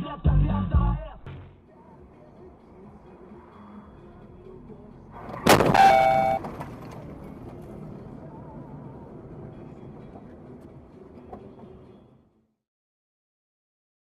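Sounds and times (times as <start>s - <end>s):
road and engine noise: 1.4s - 12.6s
vehicle crash with ringing: 5.3s - 6.9s.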